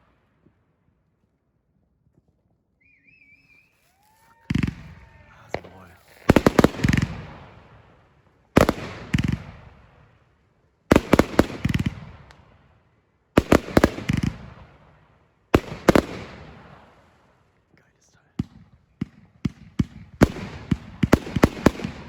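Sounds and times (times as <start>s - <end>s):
fireworks bangs: 3.4s - 10.1s, 10.9s - 12.6s, 13.4s - 14.8s, 15.6s - 17.3s, 18.4s - 22.0s.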